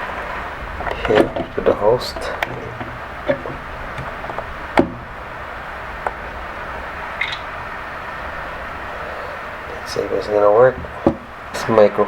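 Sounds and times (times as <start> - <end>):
low hiss: 0.0 - 12.0
plastic clicks and knocks: 0.8 - 5.4, 10.8 - 11.6.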